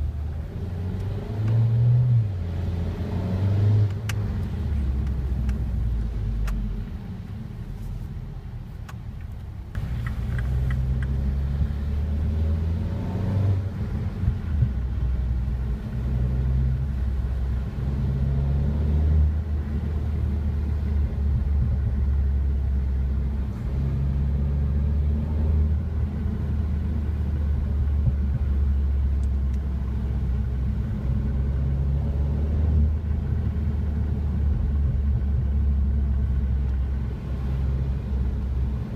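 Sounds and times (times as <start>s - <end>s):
car exhaust rumble: 0.0s - 38.9s
exhaust cracks: 8.9s - 12.2s.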